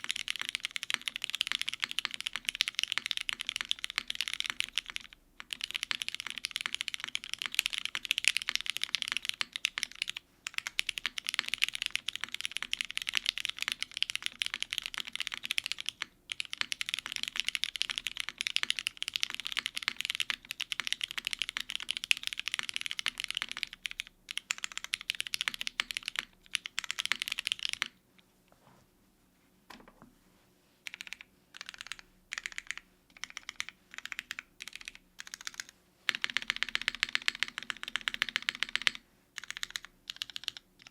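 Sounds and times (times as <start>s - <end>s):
typing on mechanical keyboard: 0.0s - 28.0s, 30.8s - 40.9s.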